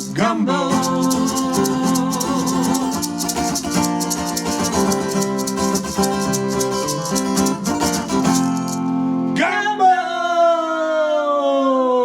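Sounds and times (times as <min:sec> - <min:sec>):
fast shaker beat: 0:00.0 - 0:08.8
held guitar chords: 0:00.0 - 0:09.4.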